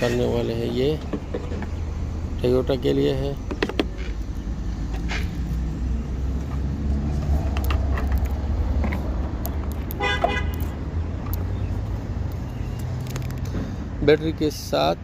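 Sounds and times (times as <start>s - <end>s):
car horn toot: 10.0s - 10.6s.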